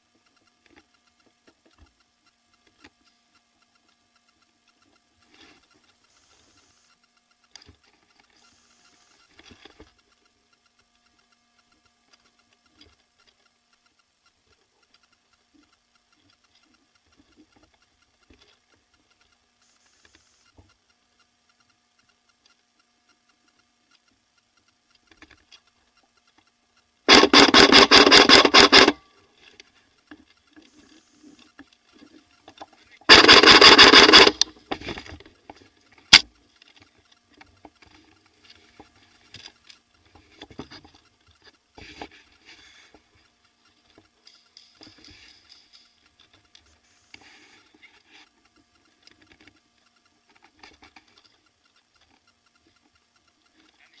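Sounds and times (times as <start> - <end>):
airsoft gun full-auto bursts: 27.1 - 29.0, 33.1 - 34.5.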